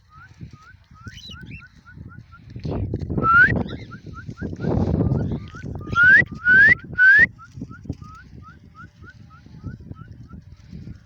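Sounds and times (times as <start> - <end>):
cockatiel whistling: 0.1 - 2.2, 3.2 - 7.3.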